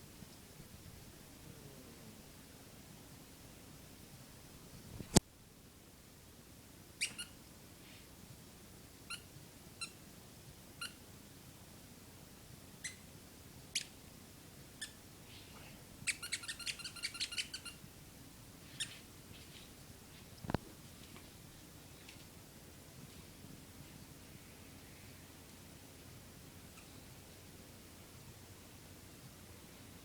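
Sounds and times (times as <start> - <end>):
rubber squeaky ball squeaking: 16.1 - 17.7.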